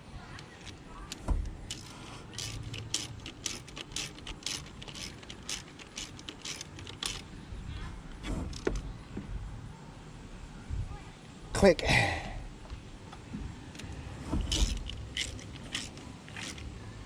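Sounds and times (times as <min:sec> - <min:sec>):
ratchet wrench clicking: 0:00.6 - 0:07.3, 0:13.8 - 0:16.7.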